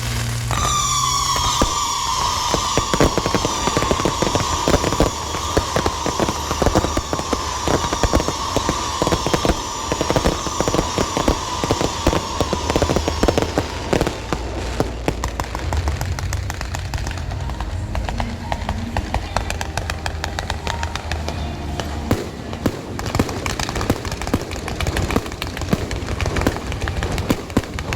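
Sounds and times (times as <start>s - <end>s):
fireworks crackling: 0.0s - 27.9s
shrill falling whistle: 0.5s - 14.6s.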